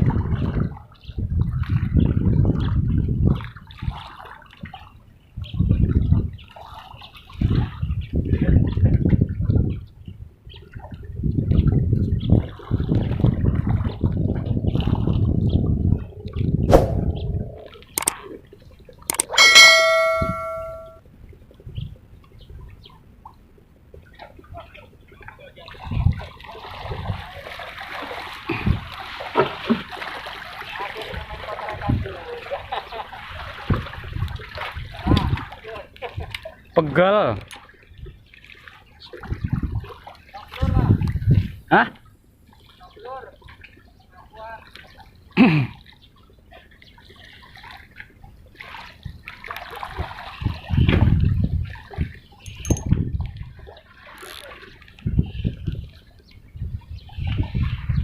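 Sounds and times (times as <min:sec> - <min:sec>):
water splashing and sloshing: 0:00.0 - 0:07.9, 0:24.0 - 0:41.3, 0:45.8 - 0:58.0
low thumps: 0:16.7 - 0:17.7
short falling-pitch sound: 0:16.7 - 0:17.7
water sloshing and splashing: 0:25.6 - 0:31.9, 0:46.2 - 0:52.4.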